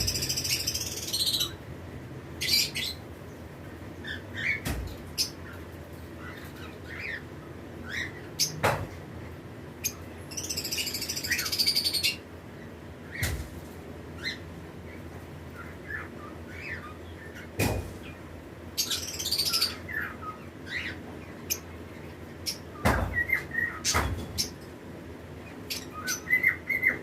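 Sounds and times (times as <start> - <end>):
buzzy bird chattering: 0.0 - 1.6
lovebirds chirping: 0.0 - 8.7, 9.7 - 13.4, 14.1 - 27.0
sharp knocks: 8.6 - 9.0, 17.6 - 18.0, 22.8 - 24.4.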